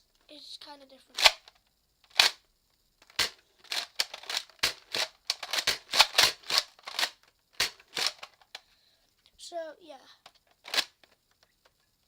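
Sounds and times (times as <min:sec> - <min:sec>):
plastic toy blaster clicking: 0:01.1 - 0:02.4, 0:03.0 - 0:08.6, 0:10.2 - 0:11.2.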